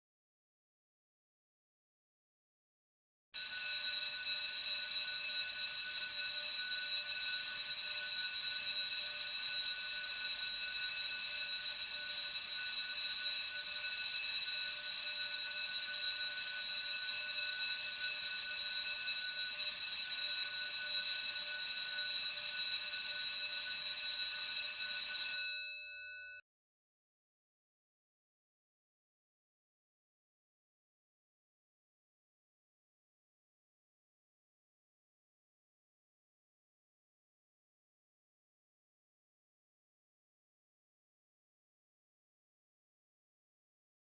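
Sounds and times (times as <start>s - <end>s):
school bell ringing: 24.4s - 26.1s.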